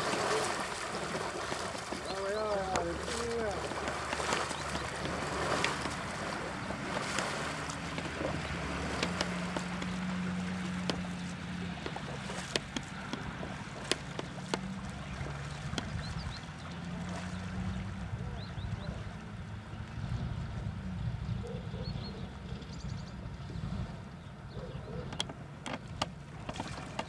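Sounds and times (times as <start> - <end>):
water noise: 0.0 - 27.0
wind on microphone: 15.0 - 25.2.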